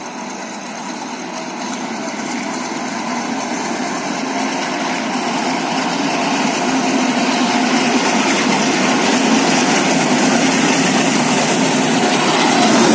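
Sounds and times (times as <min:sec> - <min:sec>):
train rumbling on rails: 0:00.0 - 0:12.9.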